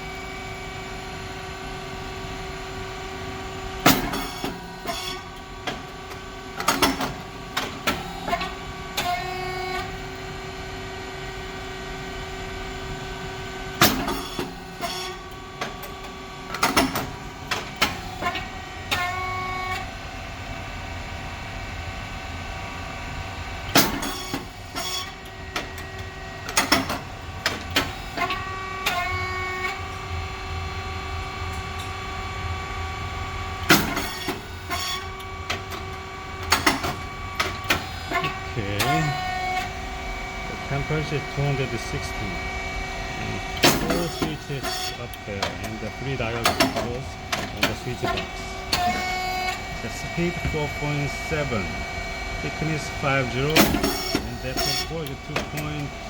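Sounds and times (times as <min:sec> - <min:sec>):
hydraulic pump and motor hum: 0:00.0 - 0:56.0
machine pop and clatter: 0:13.8 - 0:14.5.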